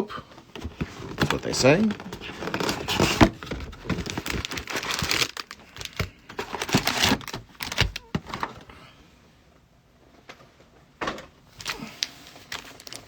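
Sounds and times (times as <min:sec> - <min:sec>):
plastic wrapping crinkling and tearing: 0:00.5 - 0:08.6, 0:11.5 - 0:13.0.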